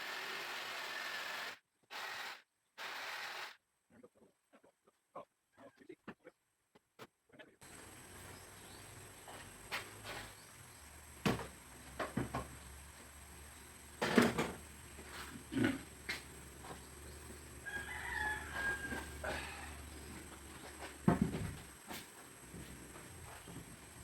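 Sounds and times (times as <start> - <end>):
steady low hum: 7.6 - 24.0
rooster crowing: 17.6 - 20.1.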